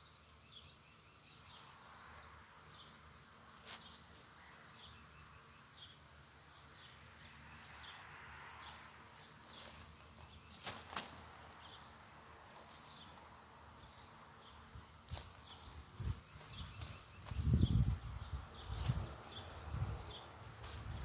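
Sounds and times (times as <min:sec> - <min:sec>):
distant birds chirping: 0:00.0 - 0:21.0
soil rustling by hand: 0:09.1 - 0:11.8, 0:15.0 - 0:21.0.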